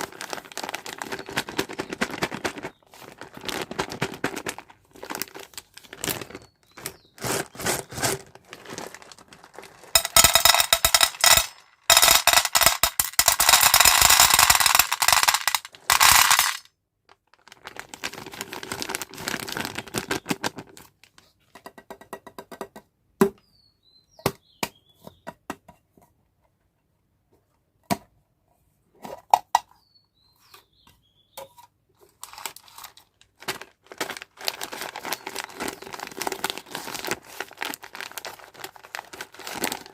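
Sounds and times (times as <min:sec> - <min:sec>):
plastic wrappers crinkling: 0:00.0 - 0:21.2, 0:32.2 - 0:39.9
hard candies clicking: 0:09.5 - 0:16.7.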